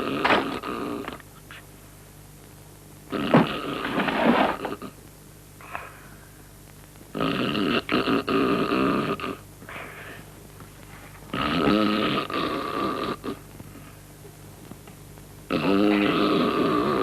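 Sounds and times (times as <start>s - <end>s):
loud snoring: 0.0s - 1.2s, 3.1s - 4.9s, 7.2s - 9.9s, 11.3s - 13.4s, 15.5s - 17.0s
faint breath: 5.6s - 6.6s, 9.6s - 11.2s.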